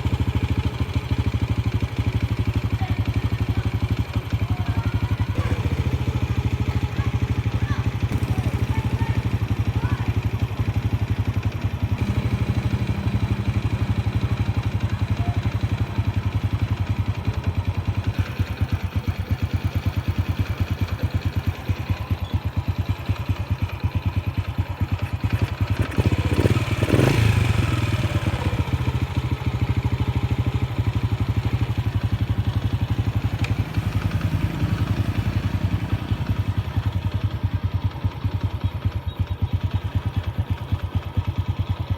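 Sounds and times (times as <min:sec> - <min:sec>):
motorcycle engine idling: 0:00.0 - 0:41.9.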